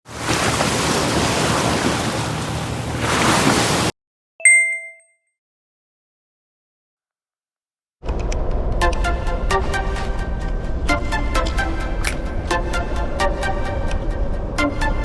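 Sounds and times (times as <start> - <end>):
sea waves: 0.0 - 3.9
wind: 0.1 - 4.8
electronic chime: 4.4 - 5.2.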